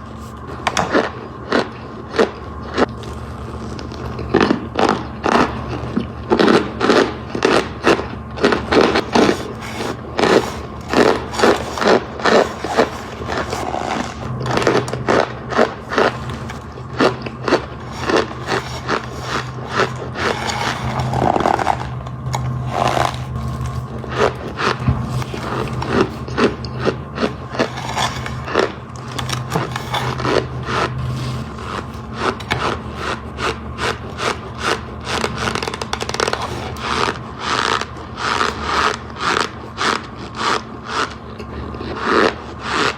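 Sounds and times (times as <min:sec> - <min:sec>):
low steady hum: 0:00.0 - 0:42.9.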